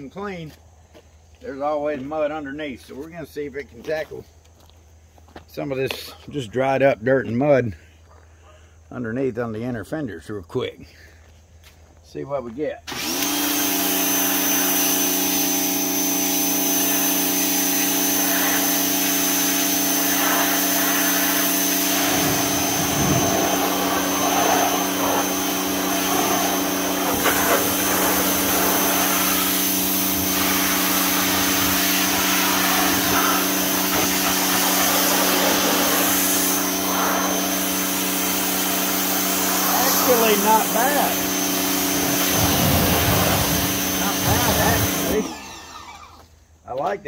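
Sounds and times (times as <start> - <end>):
pressure washer motor hum: 12.9 - 46.0
water jet spraying: 17.0 - 45.4.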